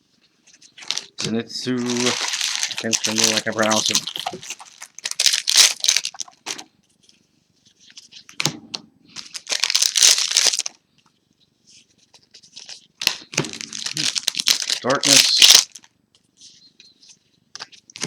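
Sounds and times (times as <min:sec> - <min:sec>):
foil wrappers crinkling and tearing: 0:00.7 - 0:06.6, 0:09.2 - 0:10.8, 0:12.6 - 0:15.9.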